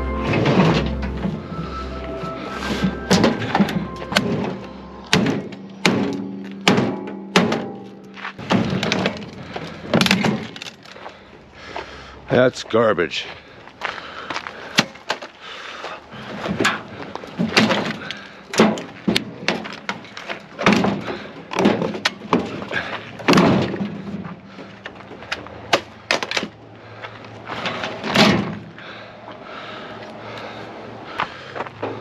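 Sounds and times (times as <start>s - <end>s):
sheet metal knocks and clanks: 3.1s - 9.2s.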